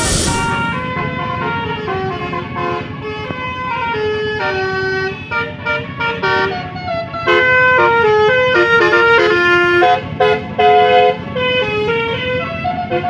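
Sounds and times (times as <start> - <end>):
bus engine running: 0.0 - 13.0
multi-tone air horn tune: 0.0 - 13.0.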